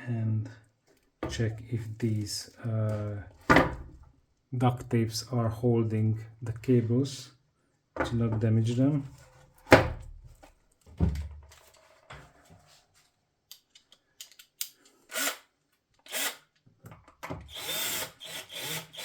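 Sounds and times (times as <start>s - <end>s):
power screwdriver running: 17.5s - 19.0s.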